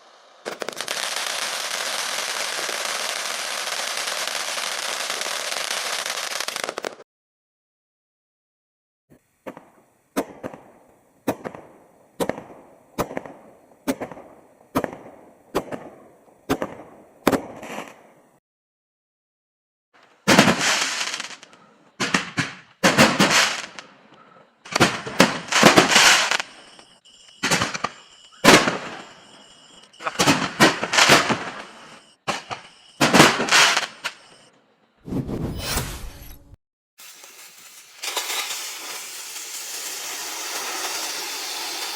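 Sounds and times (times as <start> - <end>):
firework bursts: 0.0 - 7.0, 20.2 - 23.9, 24.6 - 36.3, 37.0 - 41.9
firework shots: 0.0 - 7.0, 9.4 - 18.0, 20.2 - 23.9, 24.6 - 34.4, 37.0 - 41.9.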